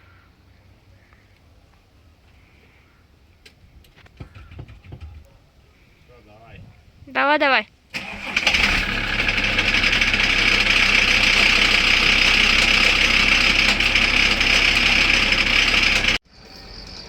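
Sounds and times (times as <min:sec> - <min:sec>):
diesel engine idling: 0:08.0 - 0:16.2
engine knocking: 0:08.0 - 0:16.2.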